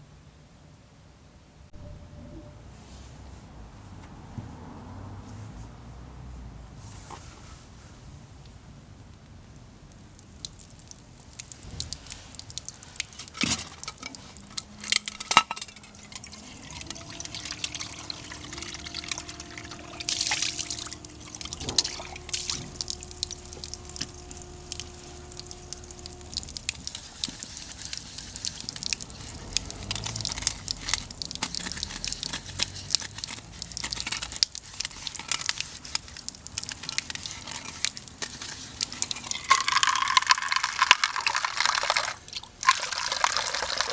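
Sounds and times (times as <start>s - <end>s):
liquid pouring and sloshing: 9.6s - 43.9s.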